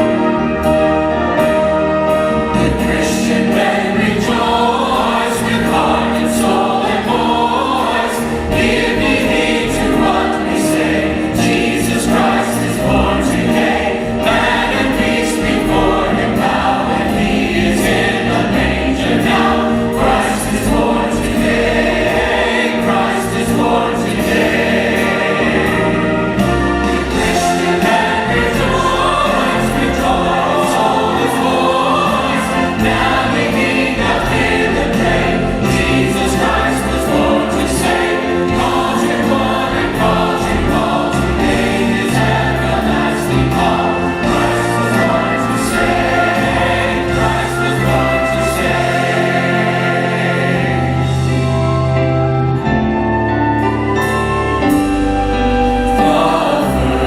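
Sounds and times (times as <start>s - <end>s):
church choir singing: 0.0s - 57.0s
instrumental accompaniment: 0.0s - 57.0s.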